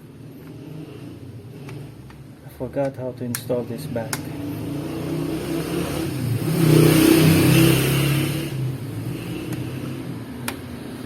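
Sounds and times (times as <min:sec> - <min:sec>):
vehicle engine hum: 0:03.7 - 0:11.0.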